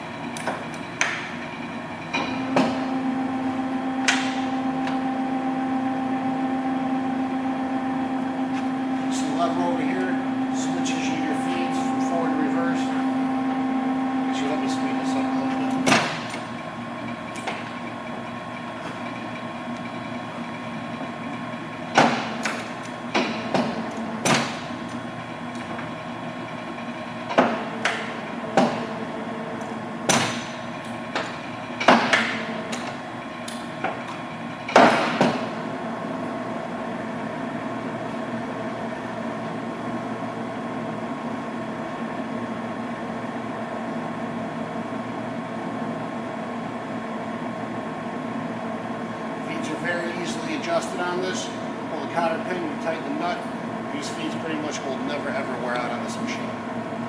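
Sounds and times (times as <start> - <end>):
lathe humming: 0.0 - 34.8.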